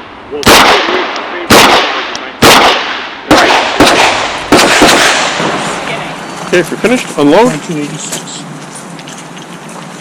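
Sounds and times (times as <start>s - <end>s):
revolver shots with echo: 0.4s - 5.6s.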